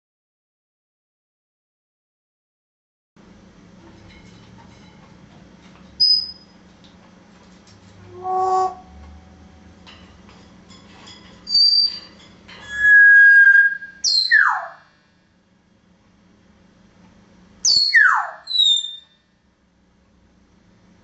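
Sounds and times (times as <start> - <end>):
parrot whistling: 6.0 - 6.4, 8.1 - 9.0, 11.5 - 14.9, 17.6 - 19.0.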